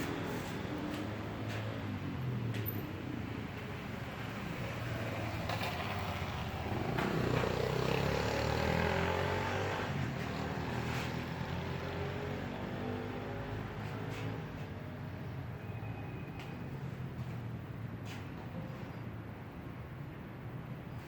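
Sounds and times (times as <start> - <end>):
passing engine hum: 0.0 - 15.4.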